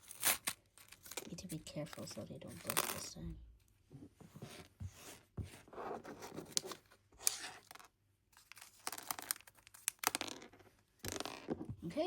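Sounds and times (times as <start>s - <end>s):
plastic bag crinkling and tearing: 0.0s - 3.2s.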